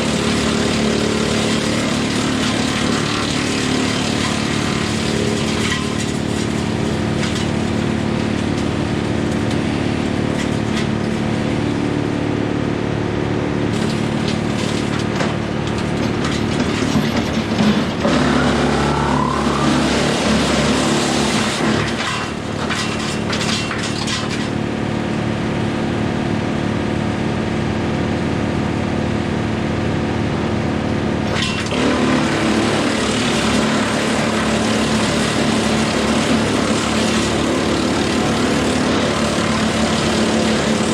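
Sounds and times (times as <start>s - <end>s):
wood chipper running: 0.0s - 40.9s
rising whine: 18.0s - 21.6s.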